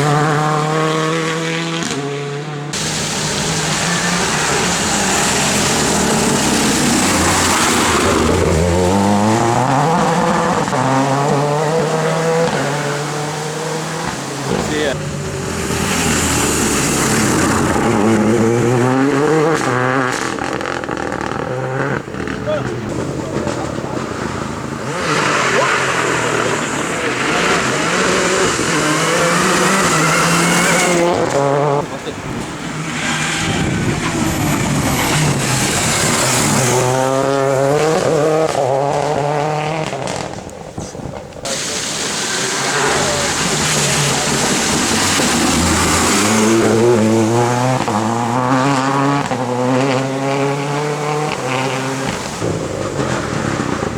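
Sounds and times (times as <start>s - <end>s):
rally car engine accelerating: 0.0s - 53.9s
loud rushing noise: 2.7s - 12.0s, 41.4s - 48.3s
exhaust cracks: 2.7s - 53.9s.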